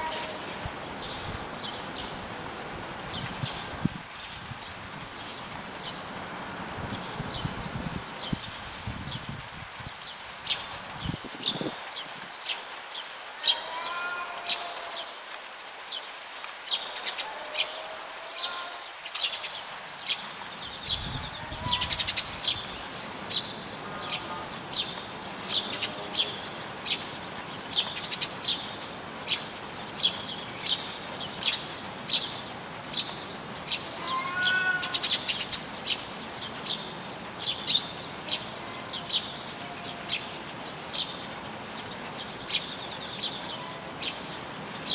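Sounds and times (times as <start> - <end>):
small birds chirping: 0.0 - 12.6.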